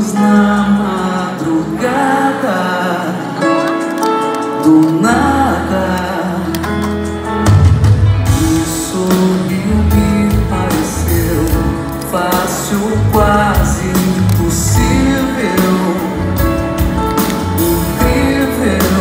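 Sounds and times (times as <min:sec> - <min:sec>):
guitar: 0:00.0 - 0:19.0
bass guitar: 0:05.1 - 0:19.0
steady drum beat: 0:07.0 - 0:19.0.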